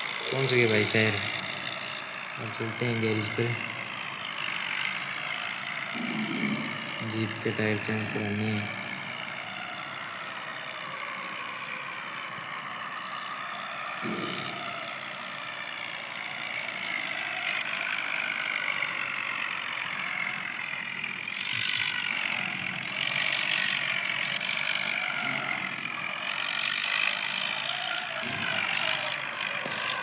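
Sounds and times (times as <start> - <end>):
tractor engine running: 0.0 - 30.0
mechanical rattling: 16.8 - 30.0.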